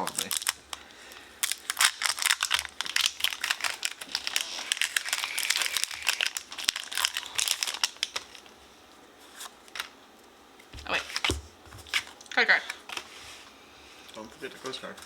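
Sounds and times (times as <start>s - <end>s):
foil wrapper crinkling: 0.0s - 8.5s.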